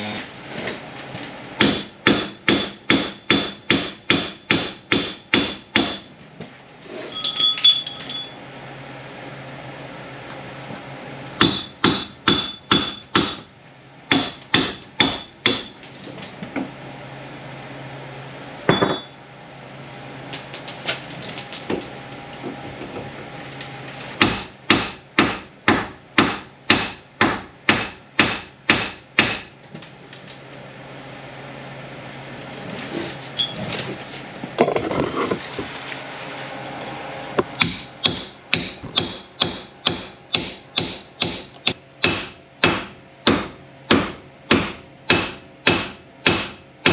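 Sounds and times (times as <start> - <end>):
hammer striking metal: 1.6 - 6.2, 11.4 - 13.5, 14.1 - 15.8, 18.7 - 19.2, 24.2 - 29.5, 37.5 - 46.9.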